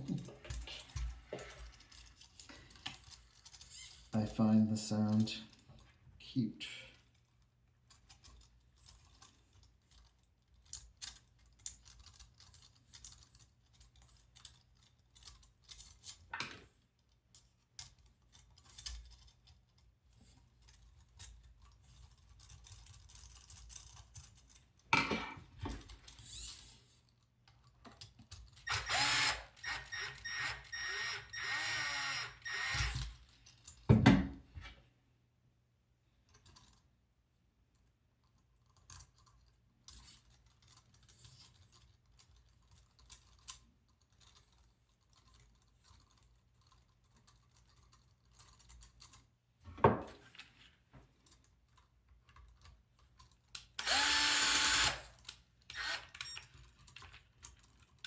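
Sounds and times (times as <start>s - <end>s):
small motor whirring: 3.7s - 4.0s, 28.6s - 33.1s, 53.8s - 56.5s.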